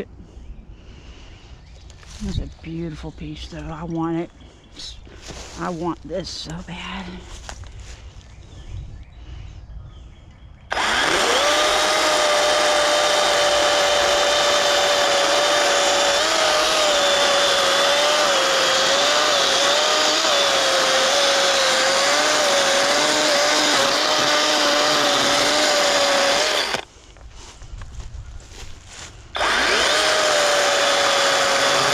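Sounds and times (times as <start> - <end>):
electric chainsaw cutting wood: 10.7 - 26.9, 29.3 - 31.9.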